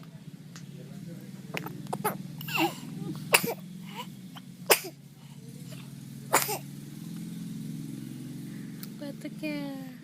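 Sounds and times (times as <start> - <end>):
person coughing: 2.0 - 4.1, 6.4 - 6.6.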